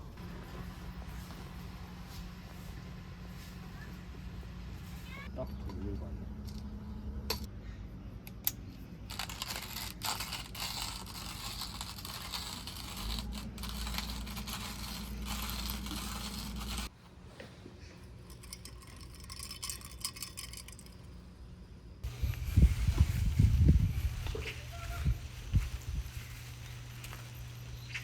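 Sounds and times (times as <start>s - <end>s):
scraping and rustling handling noises: 9.1s - 18.4s.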